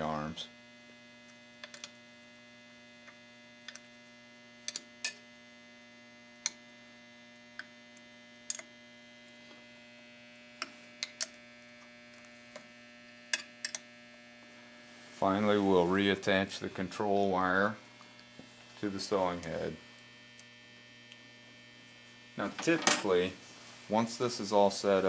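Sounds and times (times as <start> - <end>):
electrical hum: 0.0 - 25.0.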